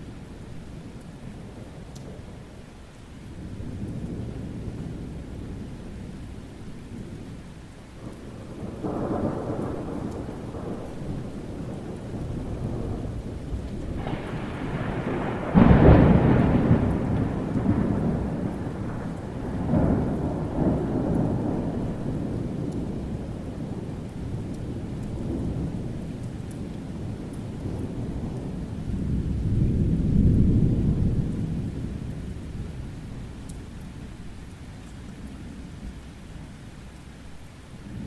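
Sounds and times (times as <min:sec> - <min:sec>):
steady rain: 0:00.0 - 0:38.0
rolling thunder: 0:03.3 - 0:34.4
loud thunderclap: 0:08.4 - 0:32.8.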